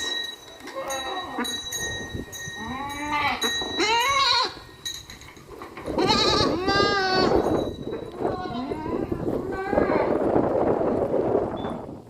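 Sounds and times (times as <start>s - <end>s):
goat bleating: 2.7s - 4.6s, 5.9s - 7.4s, 8.2s - 10.1s.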